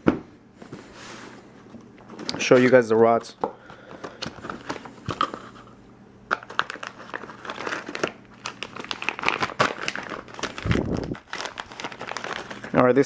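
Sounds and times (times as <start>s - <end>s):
packaging crinkling and rustling: 2.0s - 5.7s, 6.3s - 13.0s.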